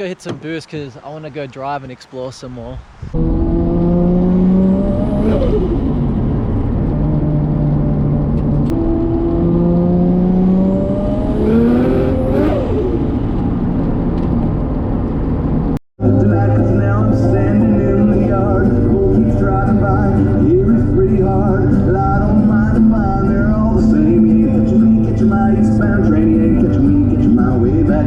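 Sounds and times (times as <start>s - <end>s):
car engine revving under boost: 3.2s - 15.7s.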